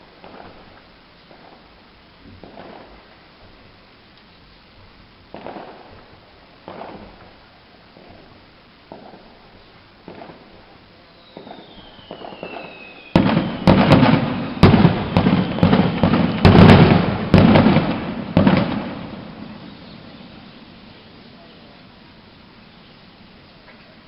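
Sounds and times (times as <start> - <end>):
firework rumble: 0.0 - 24.0
faint firework pops: 0.2 - 1.6, 2.2 - 3.6, 5.3 - 10.7, 11.3 - 20.4
loud firework bangs: 1.3 - 3.0, 5.3 - 21.2
firework whistle falling in pitch: 11.1 - 21.1.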